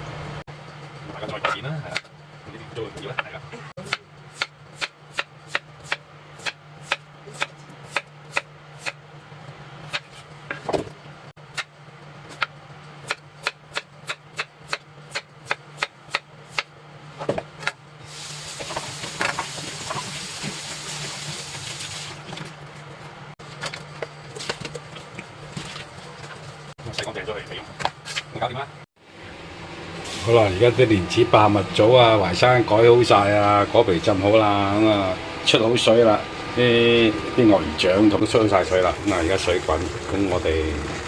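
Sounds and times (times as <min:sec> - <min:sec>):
running tap water: 0:18.1 - 0:22.3, 0:38.4 - 0:41.0.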